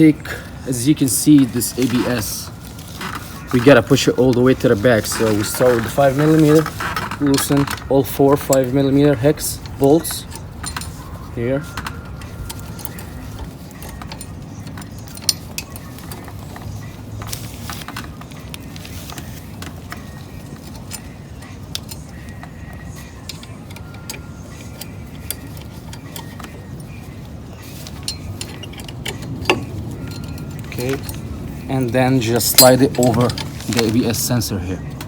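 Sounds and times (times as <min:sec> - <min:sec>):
allen key clinking on bolts: 0:07.2 - 0:16.7, 0:19.9 - 0:34.2.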